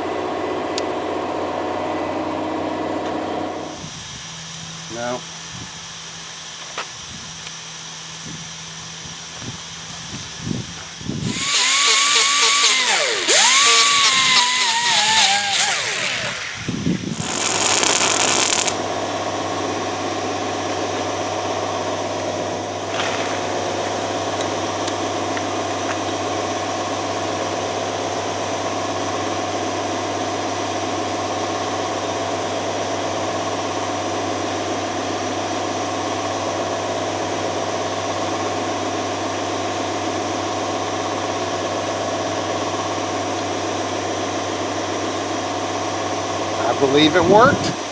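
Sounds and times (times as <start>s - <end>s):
power tool whining in bursts: 11.2s - 18.8s, 46.6s - 47.8s
steady machine hum: 11.2s - 18.8s.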